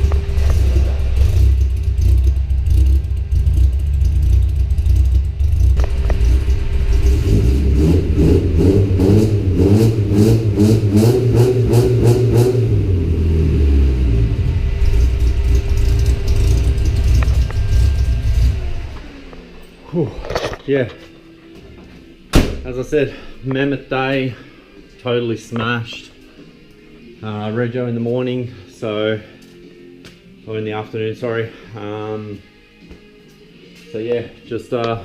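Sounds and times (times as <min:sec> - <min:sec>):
car engine revving: 0:00.0 - 0:19.9.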